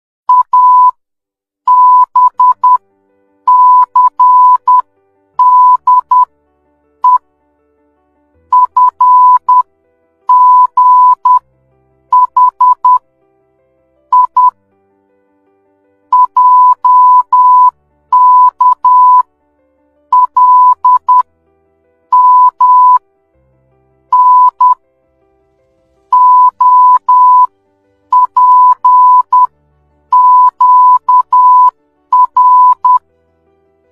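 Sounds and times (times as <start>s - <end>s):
morse code beeps: 0.3s - 1.0s, 1.7s - 2.8s, 3.5s - 4.8s, 5.4s - 6.3s, 8.5s - 9.6s, 10.3s - 11.4s, 12.2s - 13.0s, 14.1s - 14.6s, 16.1s - 19.2s, 20.1s - 21.2s, 22.1s - 23.0s, 24.1s - 24.8s, 26.1s - 27.5s, 28.1s - 29.5s, 30.1s - 33.0s.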